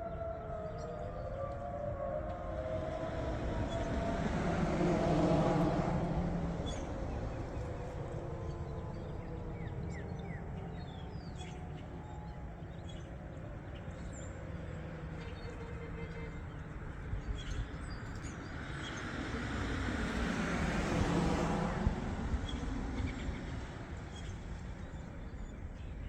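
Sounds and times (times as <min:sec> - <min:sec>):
warning siren winding down: 0:00.0 - 0:12.8.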